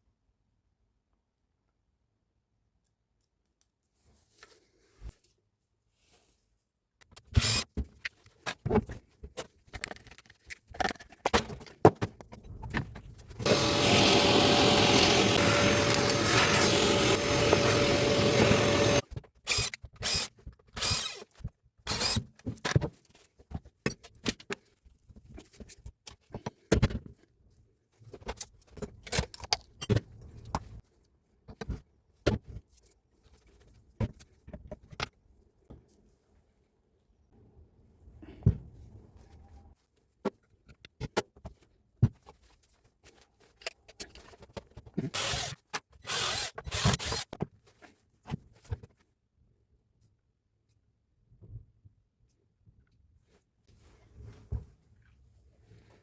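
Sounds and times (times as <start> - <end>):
motor running: 13.4 - 19.0.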